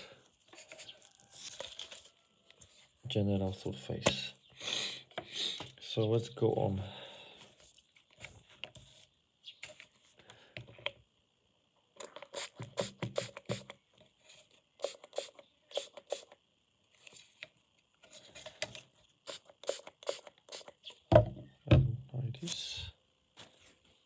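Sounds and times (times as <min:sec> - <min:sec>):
plastic parts clicking and scraping: 0:00.5 - 0:02.6.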